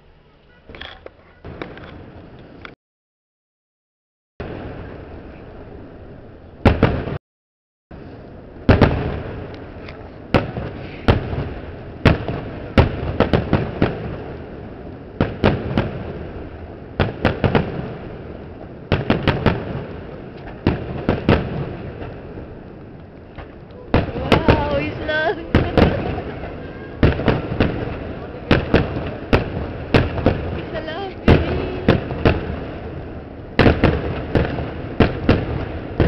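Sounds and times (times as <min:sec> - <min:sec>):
fireworks rumble and crackle: 0:00.0 - 0:02.8, 0:04.4 - 0:07.2, 0:07.9 - 0:36.0
firework shells bursting: 0:08.6 - 0:36.0.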